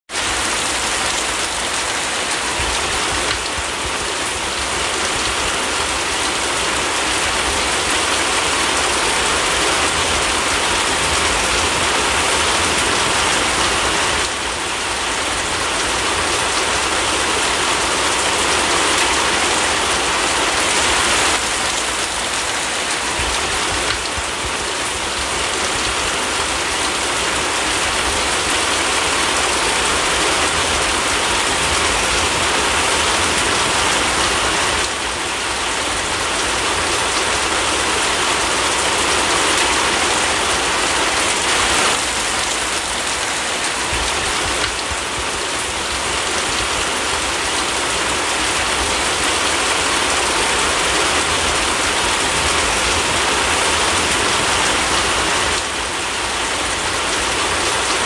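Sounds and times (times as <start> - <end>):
steady rain falling: 0.1 - 58.0.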